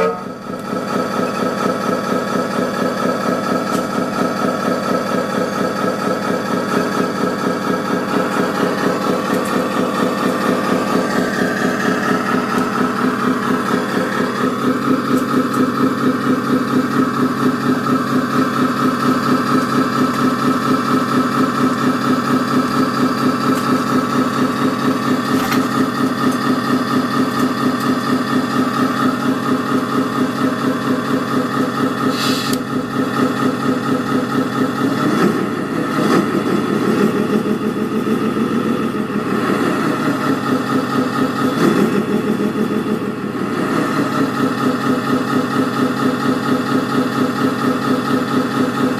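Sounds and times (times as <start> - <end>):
truck engine idling through small speaker: 0.0 - 48.9
short hiss: 32.1 - 32.6.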